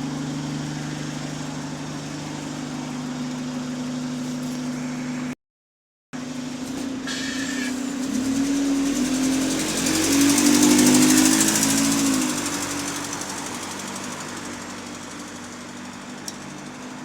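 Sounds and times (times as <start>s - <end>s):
diesel bus engine pulling: 0.0s - 5.3s, 6.2s - 17.0s.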